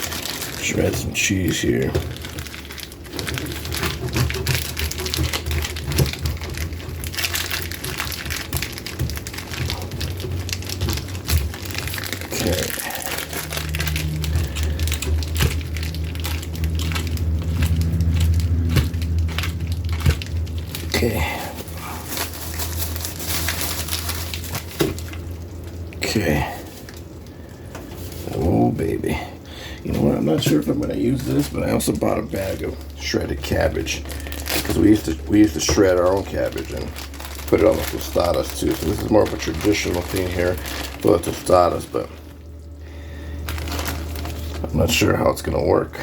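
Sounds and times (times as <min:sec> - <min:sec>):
low hum: 0:00.0 - 0:45.0.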